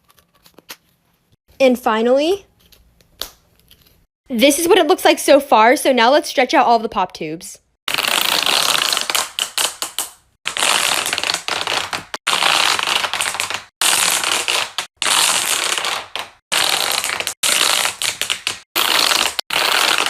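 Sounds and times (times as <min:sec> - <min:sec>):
plastic pop tubes crackling: 0:08.5 - 0:20.0.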